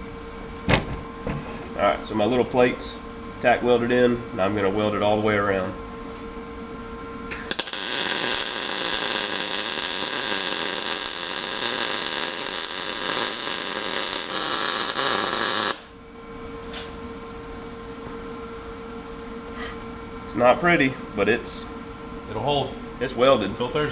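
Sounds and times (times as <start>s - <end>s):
welder hum: 6.7s - 16.0s
welder arc crackling: 7.3s - 16.0s.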